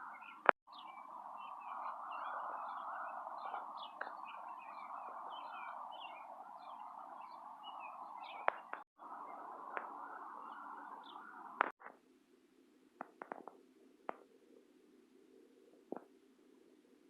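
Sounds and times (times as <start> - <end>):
birds chirping: 0.0 - 11.8.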